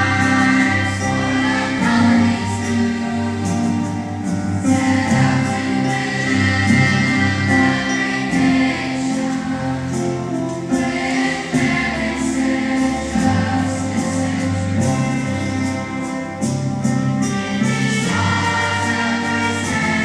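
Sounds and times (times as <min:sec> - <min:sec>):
choir singing long notes: 0:00.0 - 0:20.0.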